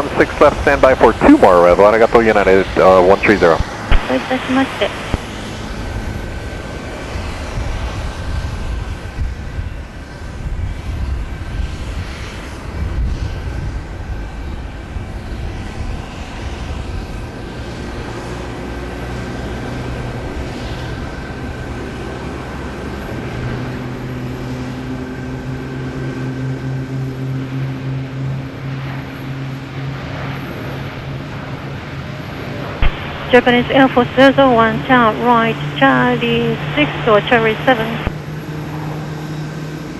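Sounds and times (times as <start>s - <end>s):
jet engines roaring on landing: 0.0s - 39.9s
low humming tones: 18.5s - 39.9s.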